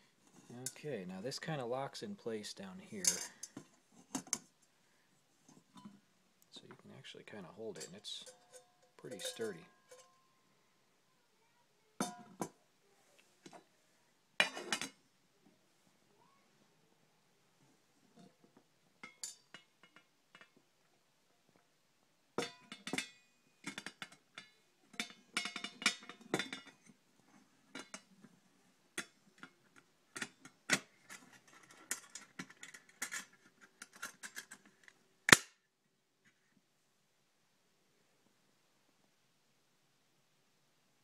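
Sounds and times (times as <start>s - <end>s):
metal cook pot clinking and rattling: 3.0s - 4.5s, 7.6s - 10.2s, 12.0s - 12.5s, 14.4s - 15.0s, 19.0s - 20.6s, 22.4s - 27.0s, 27.7s - 28.2s, 29.0s - 34.7s.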